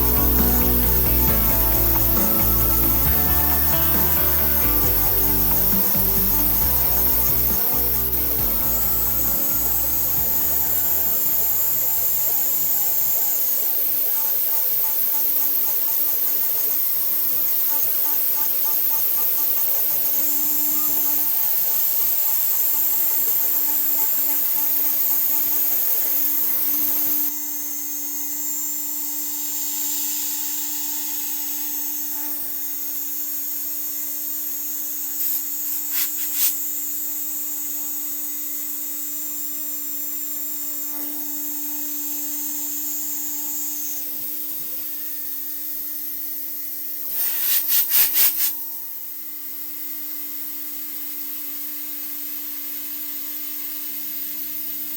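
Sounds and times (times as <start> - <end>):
rough low machine noise: 0.0 - 12.7
spindle whine: 0.0 - 12.9.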